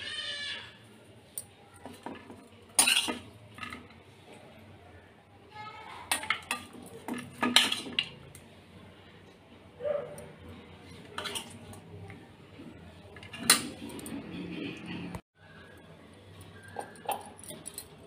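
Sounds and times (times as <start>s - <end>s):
metal utensils clinking on dishes: 1.8s - 4.0s, 6.1s - 8.3s, 10.2s - 12.0s, 13.1s - 15.2s, 16.6s - 18.0s.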